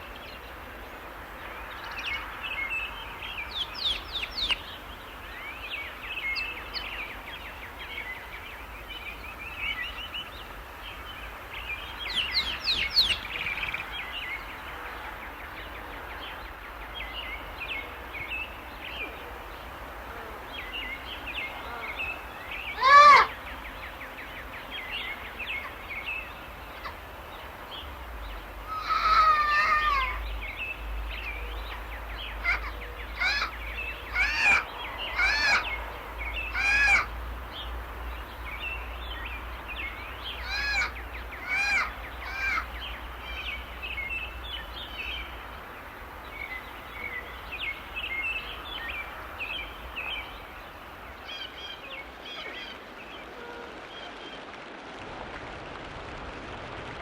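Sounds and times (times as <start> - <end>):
harsh bird calls: 9.7 - 54.2.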